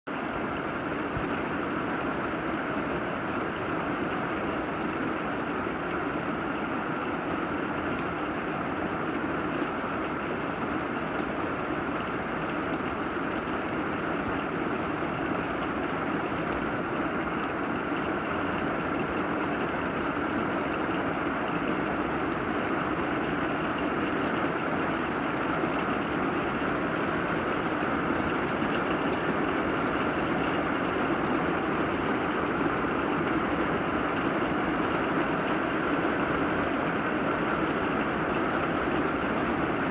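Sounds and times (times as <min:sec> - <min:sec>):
steady rain hiss: 0:10.7 - 0:39.9.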